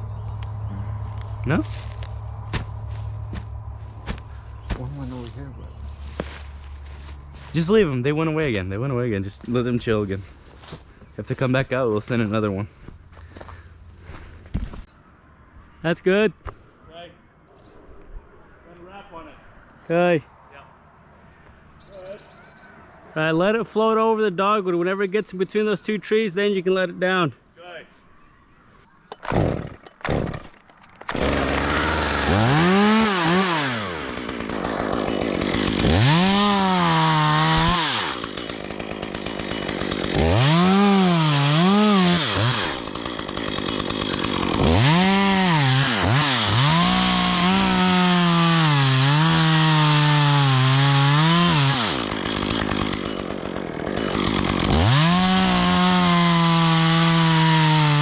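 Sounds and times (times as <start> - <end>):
chainsaw revving and cutting wood: 0.0 - 12.3, 29.3 - 58.0.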